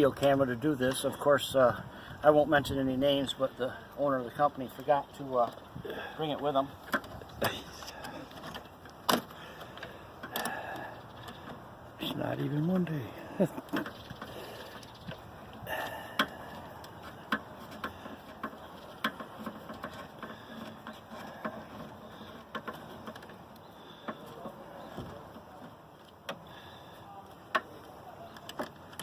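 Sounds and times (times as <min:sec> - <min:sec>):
tools tapping plastic grille: 0:15.8 - 0:26.5.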